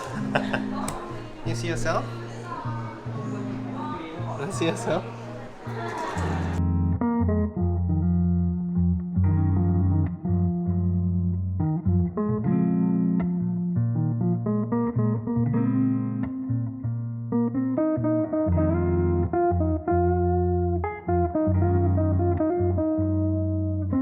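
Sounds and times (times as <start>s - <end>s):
plucked guitar melody: 0.0s - 24.0s
bass line: 6.3s - 24.0s.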